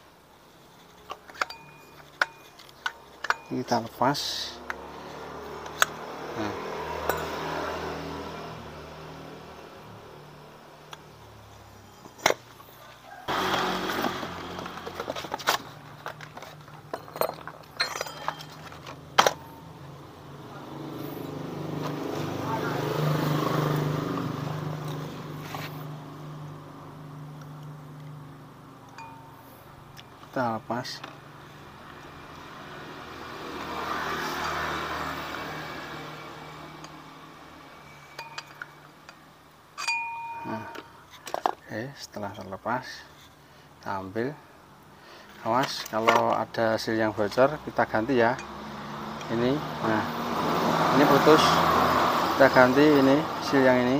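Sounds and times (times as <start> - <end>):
metal parts clinking and knocking: 0.9 - 4.0, 14.0 - 19.7, 37.9 - 41.6
motor vehicle passing: 3.0 - 39.2, 46.4 - 53.9.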